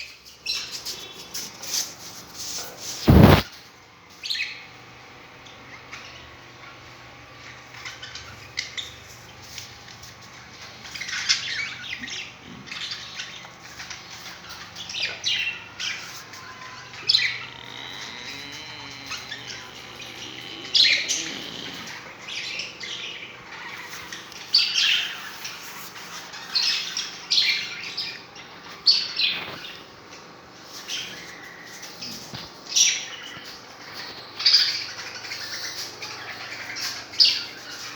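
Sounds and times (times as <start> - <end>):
budgerigars chattering and squawking: 3.1 - 3.4, 11.0 - 25.6
faint steady hum: 5.2 - 37.8.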